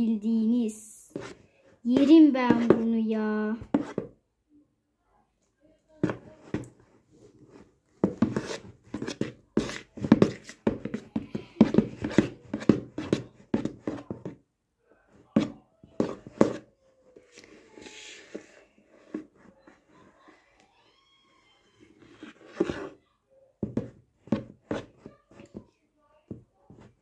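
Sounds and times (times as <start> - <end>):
slime squelching: 7.6 - 14.3.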